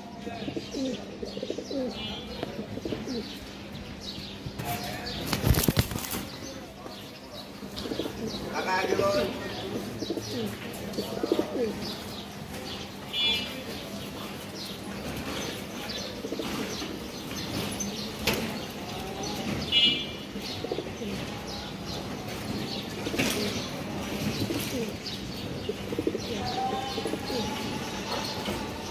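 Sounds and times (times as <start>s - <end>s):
pigeons cooing: 0.1s - 6.4s, 7.4s - 28.9s
wing flaps: 5.2s - 6.3s.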